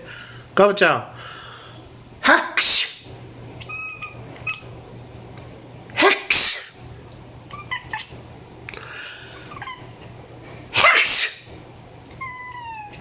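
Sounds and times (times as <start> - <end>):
cat chirping: 3.6 - 4.8, 7.5 - 8.2, 9.4 - 10.0, 12.1 - 13.0
person sneezing: 6.0 - 6.8, 10.7 - 11.5.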